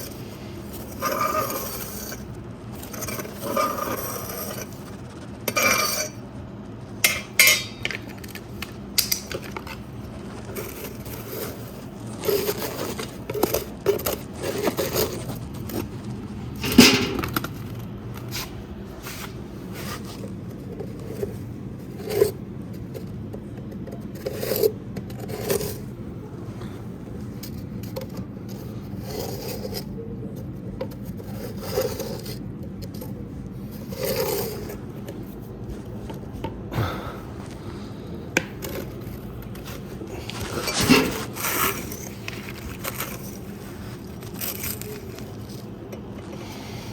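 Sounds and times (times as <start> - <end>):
tool scraping and knocking hearth: 7.0 - 21.4, 37.4 - 46.9.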